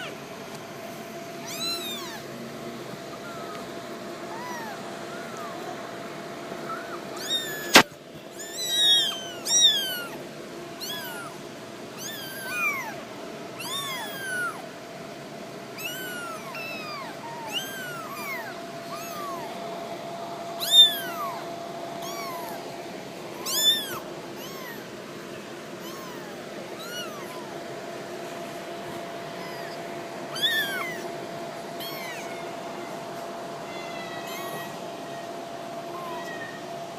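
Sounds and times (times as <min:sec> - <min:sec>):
faint steady hum: 0:00.0 - 0:36.9
kittens meowing: 0:01.2 - 0:10.2, 0:10.8 - 0:13.0, 0:13.6 - 0:14.6, 0:15.8 - 0:19.7, 0:20.6 - 0:22.8, 0:23.4 - 0:27.7, 0:29.3 - 0:31.2, 0:31.8 - 0:33.0, 0:33.6 - 0:36.7.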